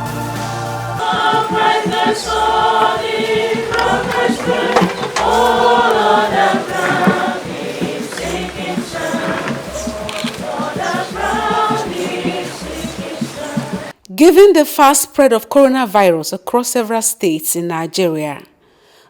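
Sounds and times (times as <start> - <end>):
choir singing: 0.0 - 13.9.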